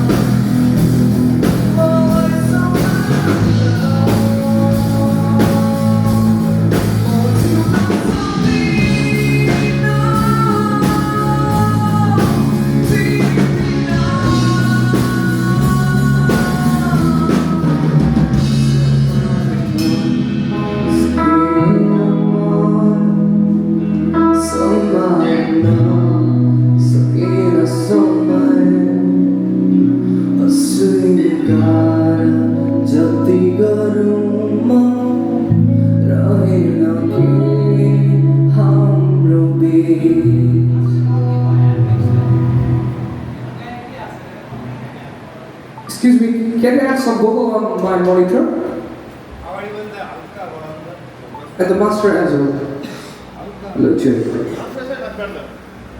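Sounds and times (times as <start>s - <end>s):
drum kit: 0.0s - 24.7s
bass notes: 0.0s - 45.8s
guitar: 0.0s - 55.9s
person singing: 1.4s - 43.2s.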